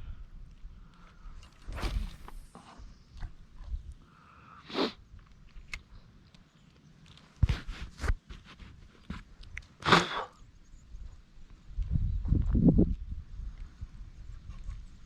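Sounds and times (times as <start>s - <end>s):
short swish: 1.7s - 2.5s.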